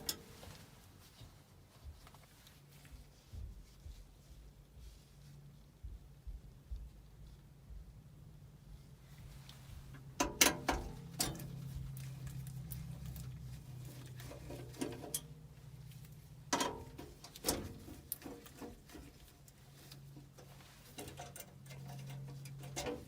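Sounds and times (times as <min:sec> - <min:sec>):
steady low hum: 0:00.0 - 0:23.0
metal parts clinking and rattling: 0:19.9 - 0:23.0.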